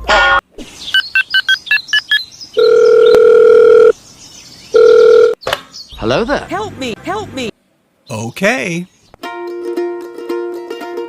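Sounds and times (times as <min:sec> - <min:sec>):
keypad beeps: 0:01.4 - 0:03.9
telephone ringing tone: 0:02.6 - 0:04.0, 0:04.8 - 0:05.4.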